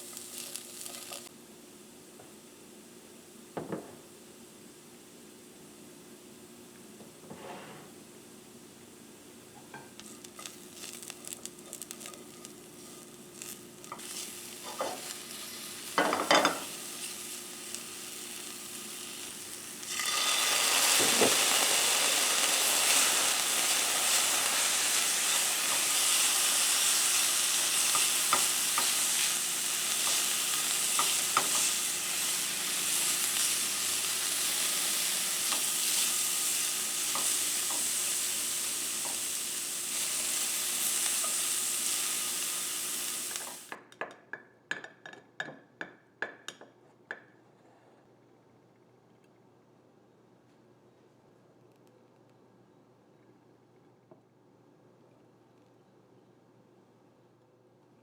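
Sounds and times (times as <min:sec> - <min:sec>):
food sizzling in hot pan: 0:00.0 - 0:01.3, 0:08.6 - 0:43.8.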